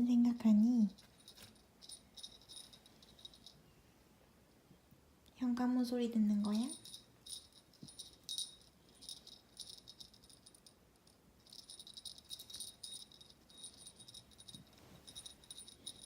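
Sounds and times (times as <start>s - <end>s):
collar bell jingling: 0.9s - 3.6s, 6.4s - 16.0s.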